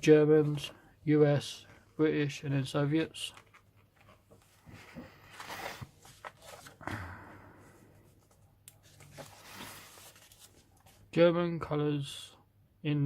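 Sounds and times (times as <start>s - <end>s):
book pages rustling: 3.0s - 6.8s, 8.0s - 11.1s.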